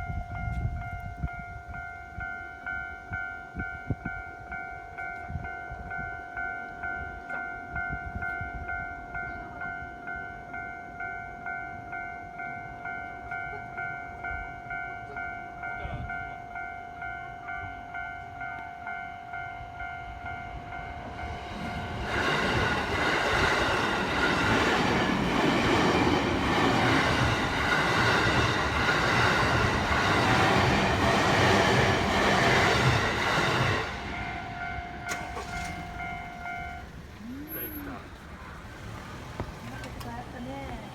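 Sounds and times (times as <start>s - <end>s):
train passing: 0.0s - 40.9s
level crossing bell ringing: 34.0s - 37.8s.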